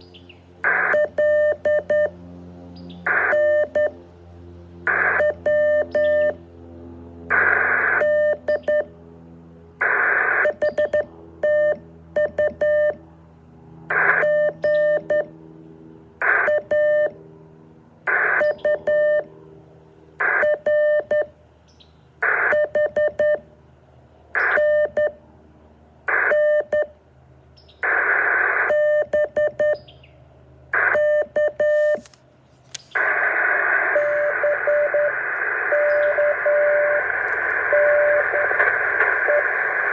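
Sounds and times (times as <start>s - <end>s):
radio hiss: 0.6s - 1.1s, 3.1s - 3.5s, 4.9s - 5.4s, 7.3s - 8.0s, 9.8s - 11.0s, 13.9s - 14.2s, 18.1s - 18.6s, 27.8s - 28.7s, 31.6s - 39.9s
morse code beeps: 0.7s - 2.1s, 3.1s - 4.0s, 5.0s - 6.4s, 8.0s - 8.9s, 10.4s - 13.0s, 14.1s - 15.3s, 16.3s - 17.1s, 18.2s - 19.3s, 20.2s - 21.3s, 22.3s - 23.4s, 24.5s - 25.2s, 26.3s - 26.9s, 28.7s - 29.8s, 30.8s - 32.1s, 33.9s - 38.6s, 39.2s - 39.5s.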